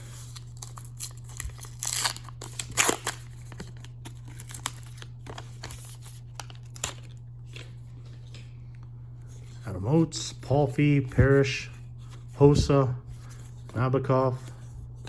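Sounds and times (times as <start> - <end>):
foil wrapper crinkling and tearing: 0.0 - 7.8
cards rustling: 0.0 - 15.0
low steady hum: 0.0 - 15.0.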